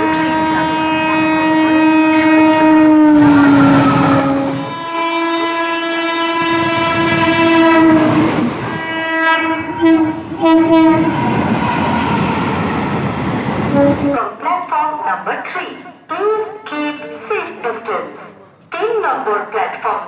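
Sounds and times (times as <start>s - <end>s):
locomotive horn blasts: 0.0s - 11.2s, 13.7s - 14.2s
train rumble and wheel clatter: 0.0s - 14.3s.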